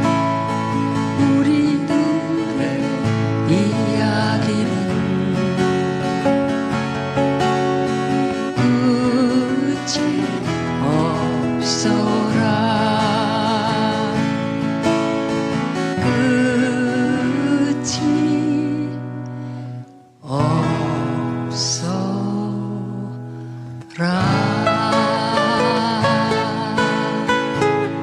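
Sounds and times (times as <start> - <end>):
acoustic guitar: 0.0 - 28.0.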